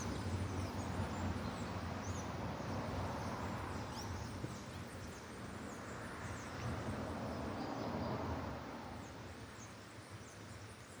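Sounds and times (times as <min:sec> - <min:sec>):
noisy outdoor background: 0:00.0 - 0:11.0.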